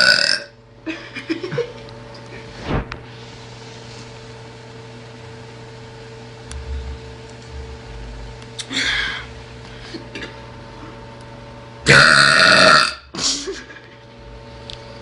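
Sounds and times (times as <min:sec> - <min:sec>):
low electrical hum: 0:00.0 - 0:15.0
low rumble: 0:06.5 - 0:08.4.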